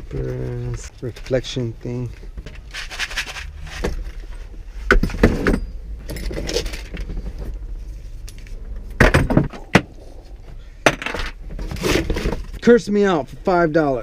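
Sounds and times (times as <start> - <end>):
steady low rumble: 3.6 - 12.6.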